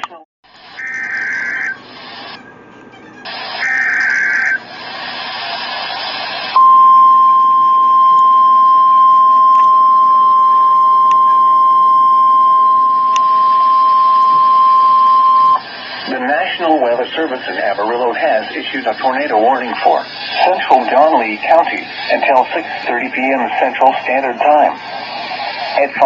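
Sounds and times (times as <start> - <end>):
radio static hiss: 0.0 - 2.4, 3.3 - 6.8, 11.1 - 26.0
steady warning alarm tone: 0.5 - 1.8, 3.3 - 26.0
digital data tones: 3.2 - 4.6.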